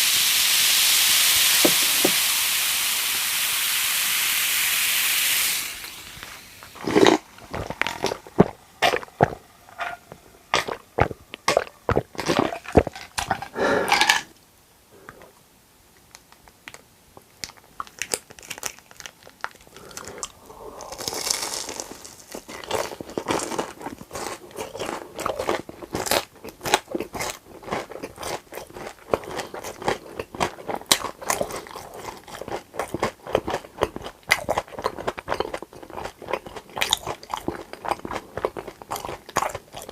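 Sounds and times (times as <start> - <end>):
crunchy food chewing: 6.2 - 14.1, 16.2 - 39.9.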